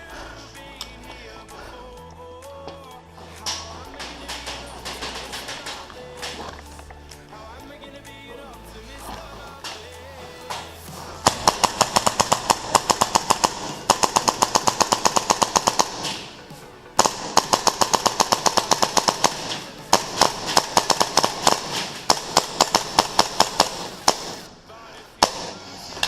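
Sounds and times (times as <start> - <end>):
airsoft rifles firing full-auto: 3.5 - 6.7, 9.6 - 24.5.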